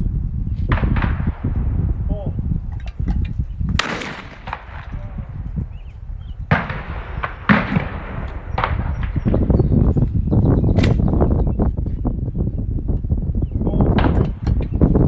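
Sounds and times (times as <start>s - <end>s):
shotgun shots: 0.7s - 1.6s, 3.8s - 5.2s, 6.5s - 9.4s.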